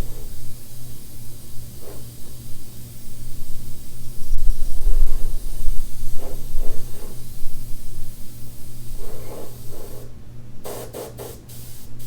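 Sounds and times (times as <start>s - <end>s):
air spray gun hissing: 0.0s - 12.0s.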